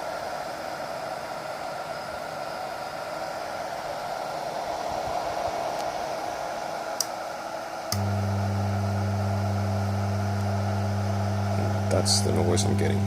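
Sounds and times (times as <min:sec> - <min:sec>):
amplifier hiss: 0:00.0 - 0:13.0
loud low amplifier hum: 0:07.9 - 0:13.0.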